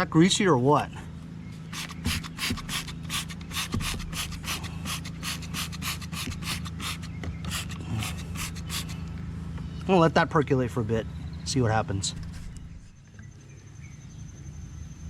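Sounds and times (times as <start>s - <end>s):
spray bottle hisses: 1.7s - 9.0s.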